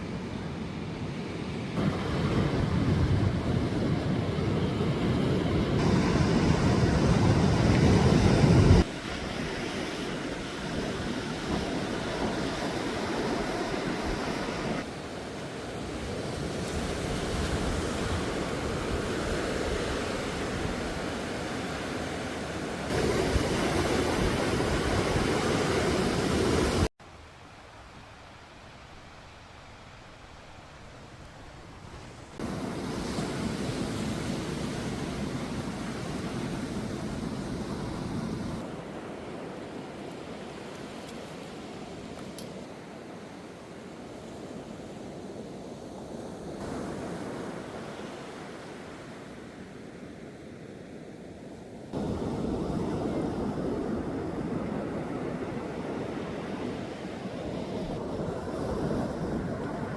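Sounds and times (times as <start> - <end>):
sea waves washing onto shore: 1.6 - 26.9, 31.8 - 50.8, 51.8 - 59.9
wind buffeting microphone: 1.8 - 14.9.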